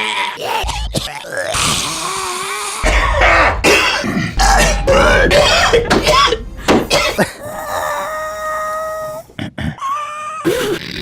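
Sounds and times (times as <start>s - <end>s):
strained groans: 1.8s - 9.4s
man coughing: 2.9s - 7.6s.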